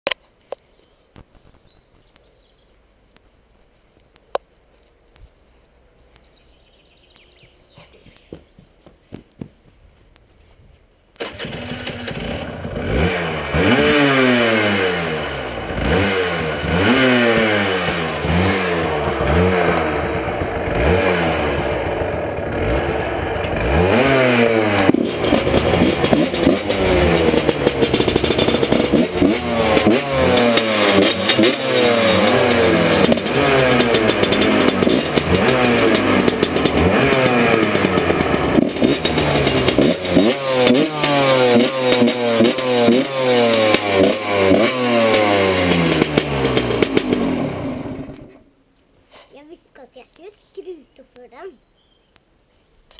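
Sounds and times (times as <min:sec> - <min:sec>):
motorcycle engine revving: 0:11.2 - 0:48.5.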